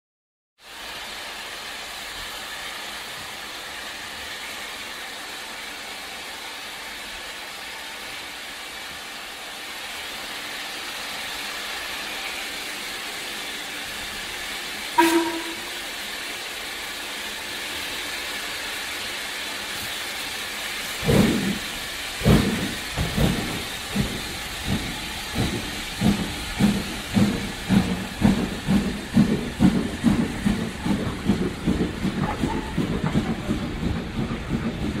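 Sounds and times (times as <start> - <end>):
steam hiss: 0.6 - 35.0
steam locomotive exhaust chuffs: 0.6 - 35.0
locomotive whistle toot: 15.0 - 15.8.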